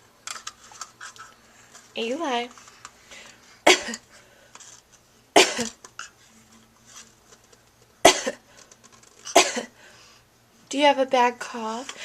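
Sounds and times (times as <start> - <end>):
baby fake coughing: 3.7 - 4.0, 5.4 - 5.8, 8.0 - 8.4, 9.3 - 9.7.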